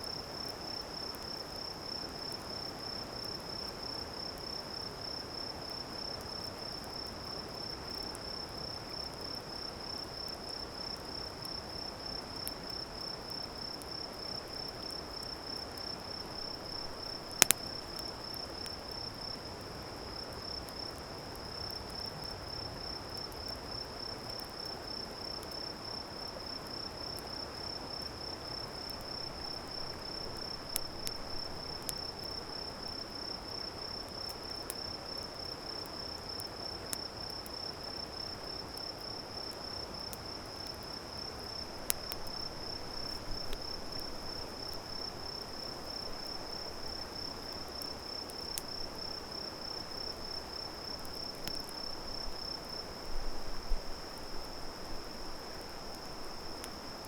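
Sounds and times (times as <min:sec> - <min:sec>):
insects trilling: 0:00.0 - 0:57.0
soft even hiss: 0:00.0 - 0:57.0
campfire crackling pops: 0:09.9 - 0:25.6, 0:26.4 - 0:57.0.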